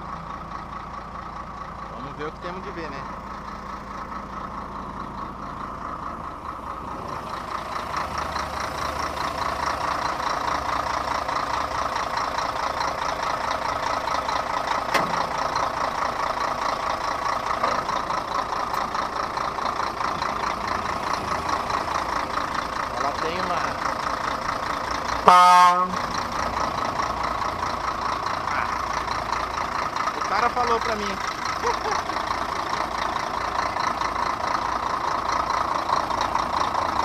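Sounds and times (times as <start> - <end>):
diesel truck engine running: 0.0 - 37.0.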